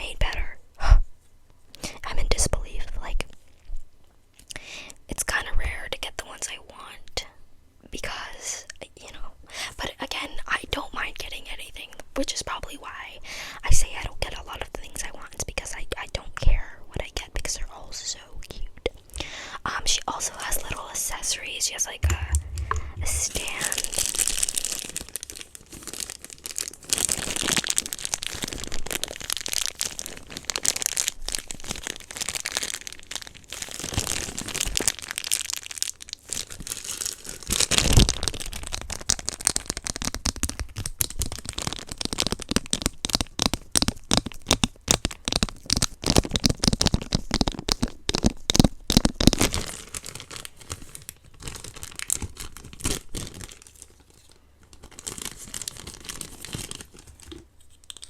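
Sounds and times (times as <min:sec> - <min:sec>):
plastic packaging crinkling and tearing: 0:22.1 - 0:58.0.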